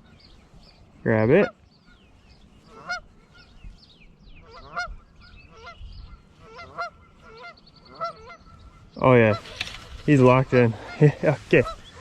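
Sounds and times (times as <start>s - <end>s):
small birds chirping: 0.0s - 12.0s
goose honking: 2.7s - 3.1s, 4.4s - 5.8s, 6.4s - 9.8s, 10.4s - 12.0s.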